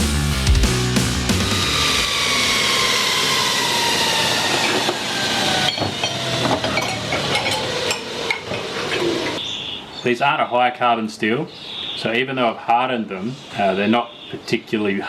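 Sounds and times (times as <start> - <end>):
grinder motor whining down: 0.9 - 9.4.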